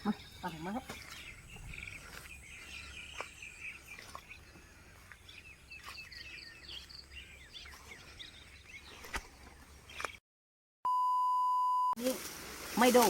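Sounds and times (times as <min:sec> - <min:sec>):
birds chirping: 0:00.0 - 0:10.2.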